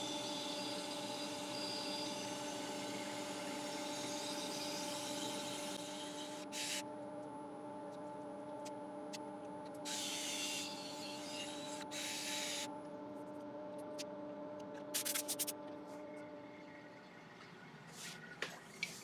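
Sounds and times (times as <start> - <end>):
wood lathe motor hum: 0.0 - 6.7.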